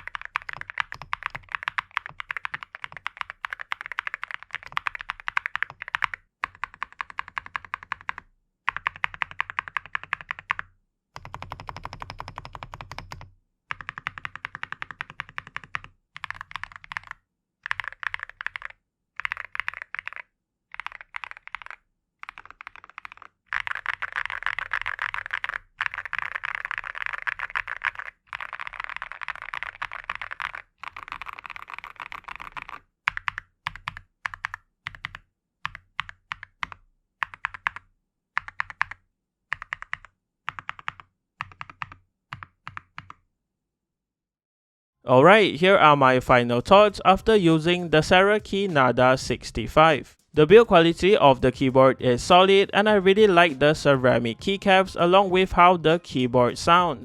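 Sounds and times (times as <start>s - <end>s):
fast typing on mechanical keyboard: 0.0s - 43.2s.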